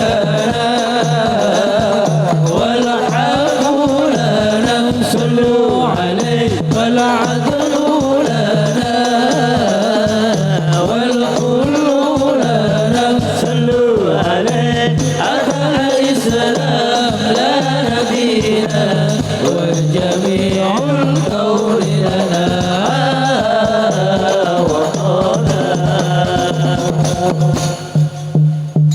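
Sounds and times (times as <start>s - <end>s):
percussion rhythm: 0.0s - 28.9s.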